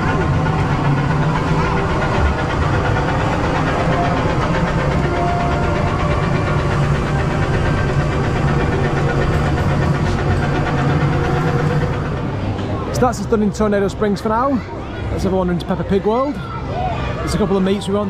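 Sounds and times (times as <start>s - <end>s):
small tractor engine running: 0.0s - 13.8s.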